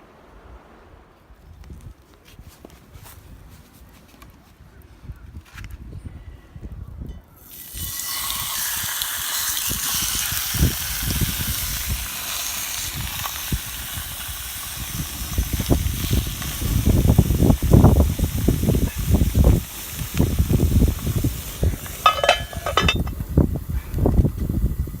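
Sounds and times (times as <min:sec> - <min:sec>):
strong wind hissing: 0:07.6 - 0:25.0
wind buffeting microphone: 0:09.6 - 0:25.0.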